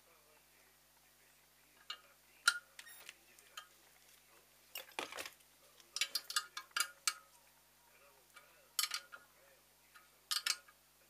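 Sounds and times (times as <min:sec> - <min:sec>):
metal parts and tools clinking: 0:05.9 - 0:07.2, 0:08.8 - 0:09.2, 0:10.3 - 0:10.8.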